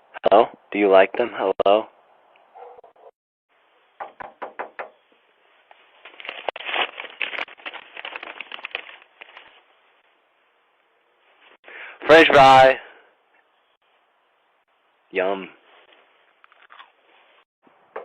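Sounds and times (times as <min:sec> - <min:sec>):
irregular clicking and rustling: 0:05.7 - 0:09.6.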